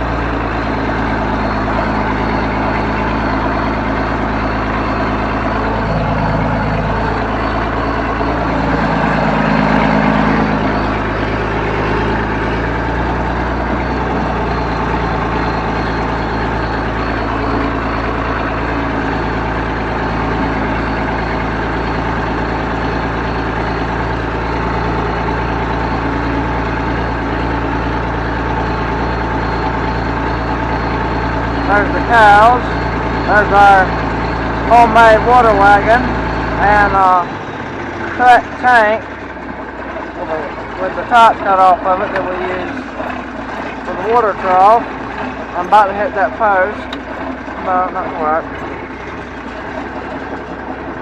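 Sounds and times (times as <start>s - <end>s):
tractor diesel engine running: 0.0s - 51.0s.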